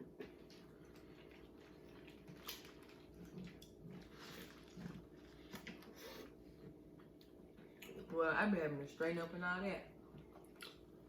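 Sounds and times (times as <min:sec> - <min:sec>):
low room hum: 0:00.0 - 0:11.0
wet mouth eating sounds: 0:10.1 - 0:11.0.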